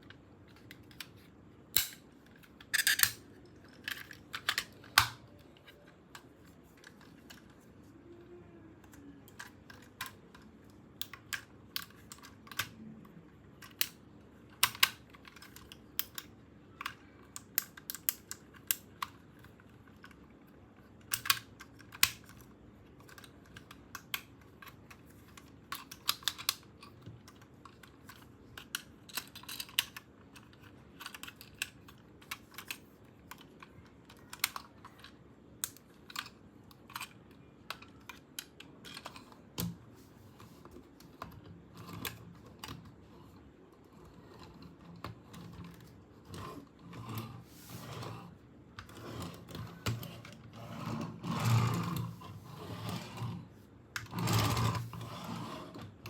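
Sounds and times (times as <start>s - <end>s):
plastic toy parts clicking: 0.5s - 7.6s, 8.8s - 12.9s, 13.6s - 39.7s.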